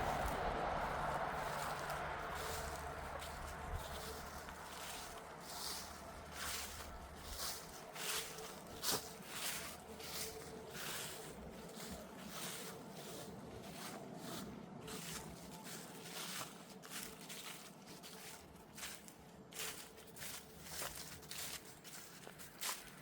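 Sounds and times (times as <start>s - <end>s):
footsteps crunching outdoors: 0.0s - 23.0s.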